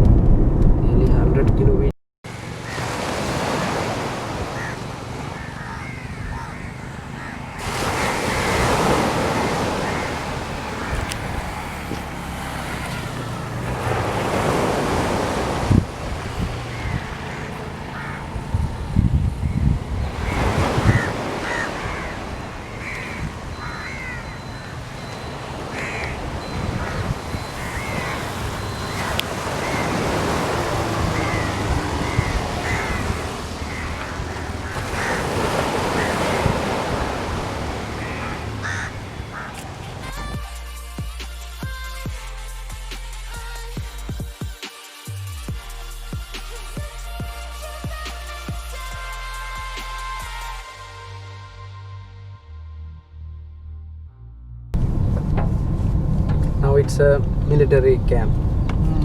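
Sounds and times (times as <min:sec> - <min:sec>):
sea waves washing in: 0:02.3 - 0:40.4
short bird calls: 0:19.5 - 0:40.4.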